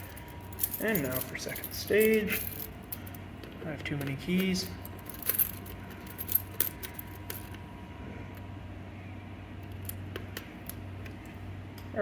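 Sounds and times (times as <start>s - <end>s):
keys jangling and clinking: 0.0s - 7.6s.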